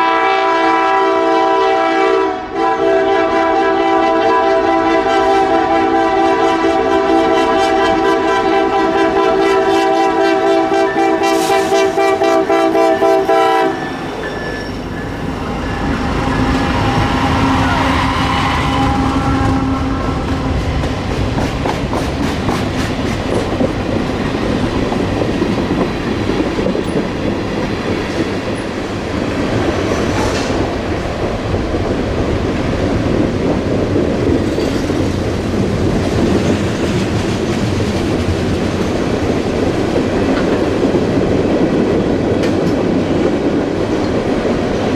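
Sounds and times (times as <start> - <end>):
locomotive air horn chord: 0.0 - 14.5, 15.4 - 20.8
freight train rumbling past: 0.0 - 44.9
wheels clacking over rail joints: 12.8 - 44.9.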